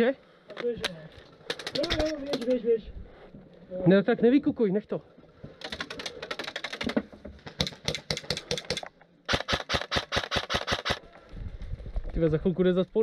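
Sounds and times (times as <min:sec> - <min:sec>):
airsoft rifle full-auto bursts: 0:08.0 - 0:11.1.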